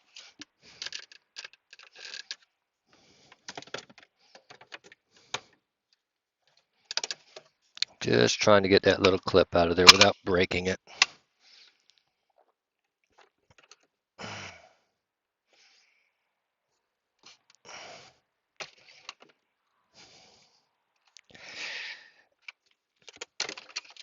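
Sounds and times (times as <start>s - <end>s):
soft sighing breaths: 14.2s - 16.4s, 19.8s - 22.4s.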